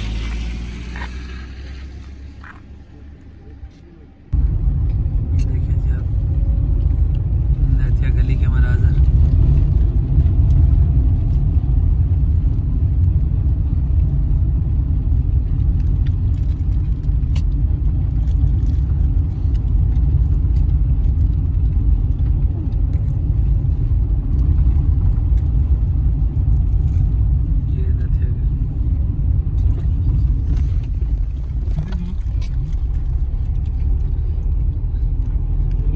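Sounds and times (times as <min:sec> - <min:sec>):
car road rumble and engine hum: 0:00.0 - 0:35.9.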